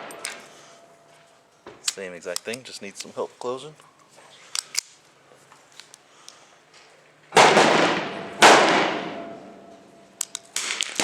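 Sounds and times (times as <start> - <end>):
pistol shots: 7.4 - 9.2.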